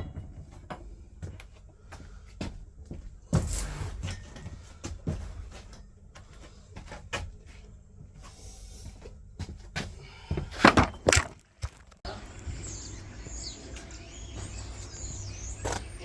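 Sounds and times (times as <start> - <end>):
knocks and clunks: 10.3 - 12.0.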